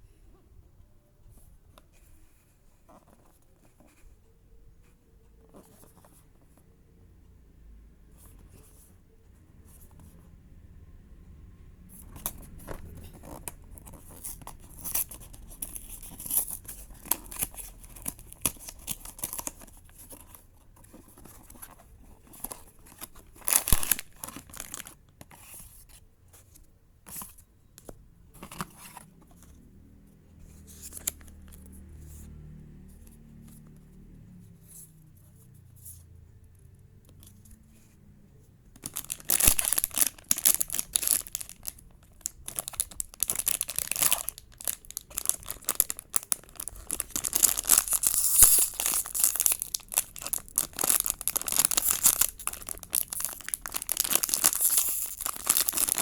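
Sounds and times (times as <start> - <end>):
packaging tearing and crinkling: 22.2 - 25.0, 38.8 - 56.0
loud packaging rip: 23.4 - 24.9, 38.9 - 56.0.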